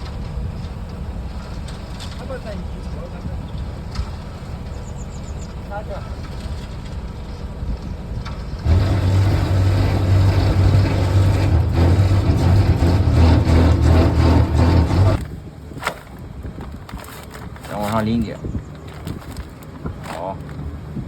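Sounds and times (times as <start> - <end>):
excavator diesel engine revving: 8.6 - 16.4.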